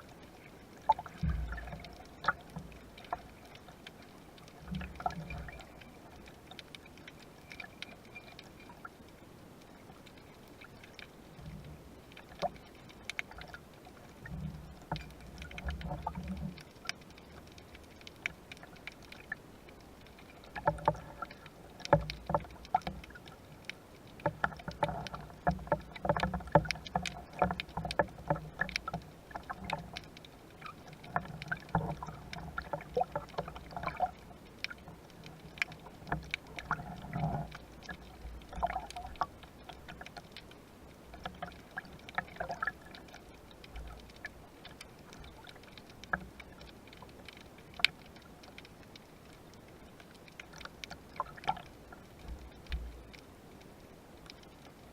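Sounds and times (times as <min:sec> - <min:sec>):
sea water sloshing: 0:00.0 - 0:54.9.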